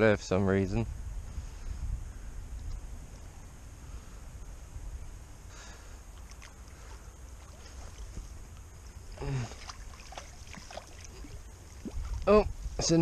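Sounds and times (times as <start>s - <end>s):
wind on microphone: 0.4s - 5.6s, 7.4s - 13.0s
fish splashing in water: 9.1s - 12.2s.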